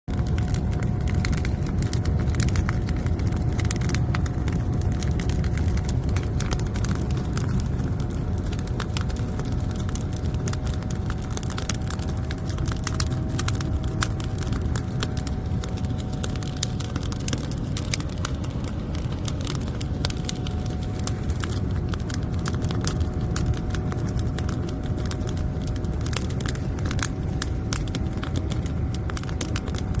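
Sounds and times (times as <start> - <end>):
steady whine: 0.1 - 30.0
wood fire roaring and crackling: 0.1 - 30.0.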